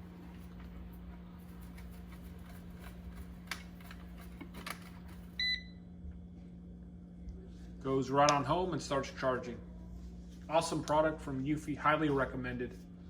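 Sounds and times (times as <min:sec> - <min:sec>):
steady low hum: 0:00.0 - 0:13.0
robot vacuum beep: 0:05.4 - 0:05.7.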